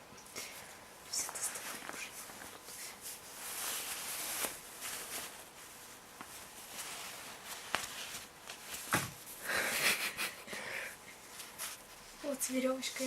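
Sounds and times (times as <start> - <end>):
rustling and scuffling: 1.3 - 9.4, 11.2 - 13.0.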